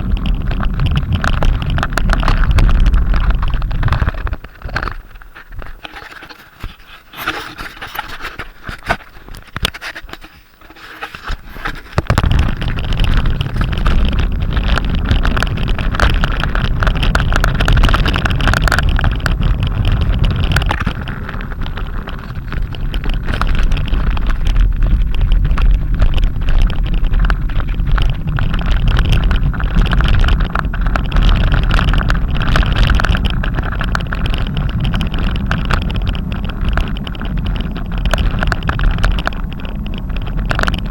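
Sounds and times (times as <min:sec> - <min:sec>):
wind buffeting microphone: 0:00.0 - 0:10.2, 0:11.0 - 0:40.9
scattered clicks: 0:00.0 - 0:40.9.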